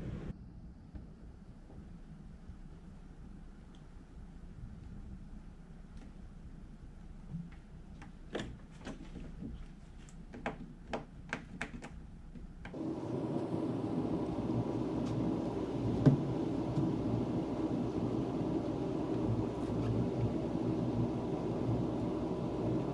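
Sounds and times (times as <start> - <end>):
steady engine drone: 12.8 - 22.9.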